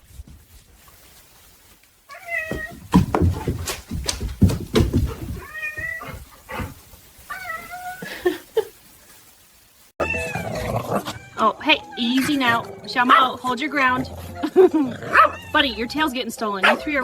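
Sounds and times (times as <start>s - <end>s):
sharp bumps and scuffling: 0.0s - 7.9s
cat meowing: 2.1s - 2.8s, 5.2s - 6.7s, 7.3s - 8.1s, 10.0s - 12.6s, 15.1s - 15.7s.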